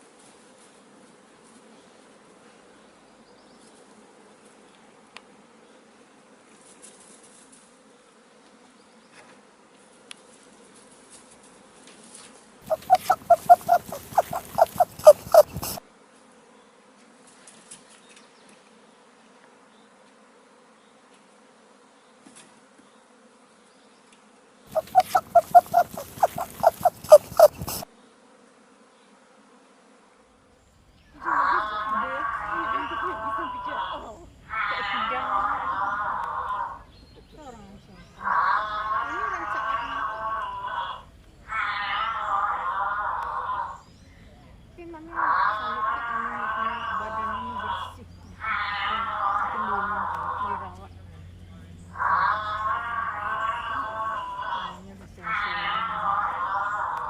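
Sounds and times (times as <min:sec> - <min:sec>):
animal calling in rapid pulses: 0:12.7 - 0:15.8, 0:24.7 - 0:27.9, 0:45.1 - 0:50.6, 0:51.9 - 0:57.0
faint steady hum: 0:12.7 - 0:15.8, 0:24.7 - 0:27.9.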